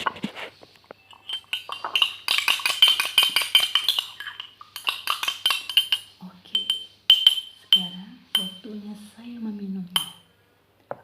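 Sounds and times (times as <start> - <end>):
spoon clinking in a vessel: 1.0 - 8.7, 10.0 - 10.3.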